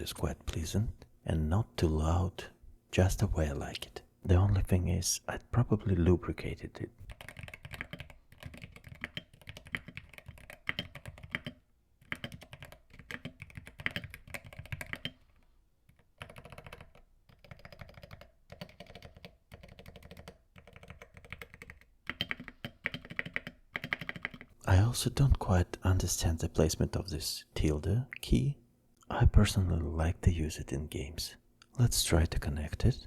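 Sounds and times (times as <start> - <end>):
keyboard typing: 7.0 - 24.6.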